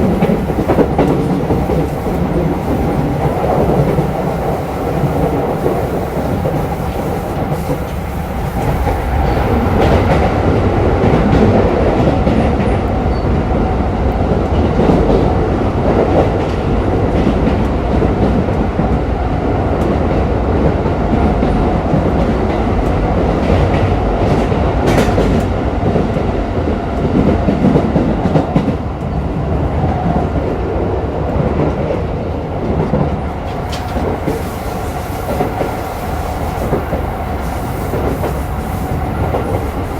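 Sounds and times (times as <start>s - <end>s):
wheel and rail noise: 0.0s - 13.2s, 27.1s - 39.9s
rail joint clicks: 0.0s - 39.9s.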